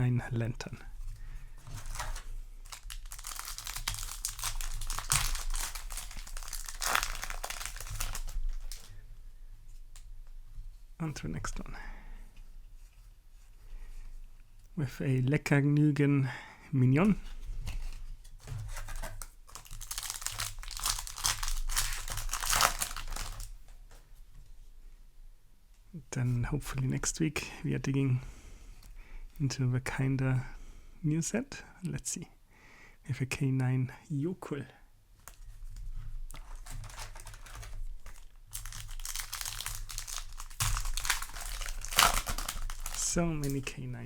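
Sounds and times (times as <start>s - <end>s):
foil wrapper crinkling and tearing: 1.6s - 8.9s, 18.3s - 23.6s, 36.2s - 43.8s
trading cards being handled: 1.6s - 8.9s, 17.8s - 23.5s, 36.3s - 43.8s.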